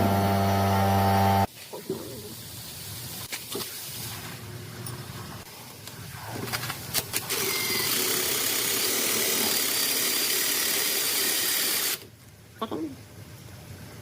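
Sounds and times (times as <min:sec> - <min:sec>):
power tool running with hiss: 0:00.0 - 0:01.5, 0:07.3 - 0:12.0.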